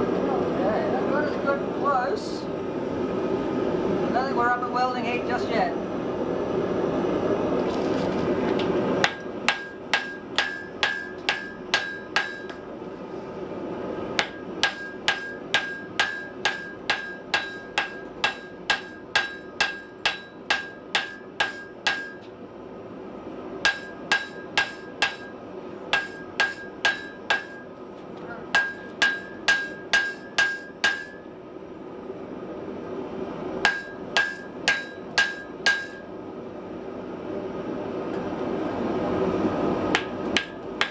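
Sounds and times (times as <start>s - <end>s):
hammer striking iron on anvil: 9.0s - 12.7s, 14.2s - 22.3s, 23.6s - 27.8s, 28.5s - 31.3s, 33.6s - 36.1s, 39.9s - 40.9s.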